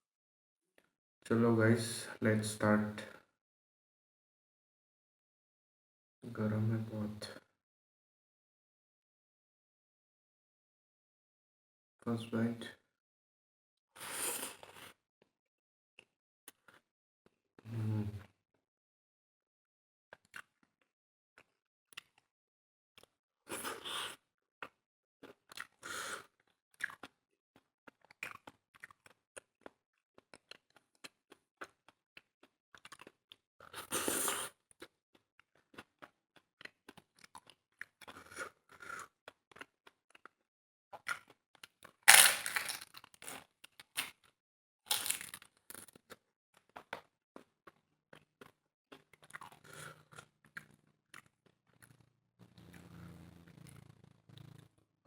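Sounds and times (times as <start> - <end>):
chewing and crunching food: 14.0 - 15.0, 16.0 - 17.4, 20.1 - 20.8, 21.4 - 22.3, 23.0 - 54.8.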